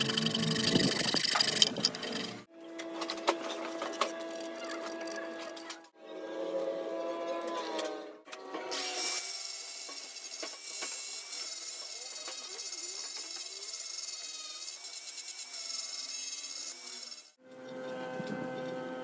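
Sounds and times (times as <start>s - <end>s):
hand tool scraping wood: 0.0s - 2.5s.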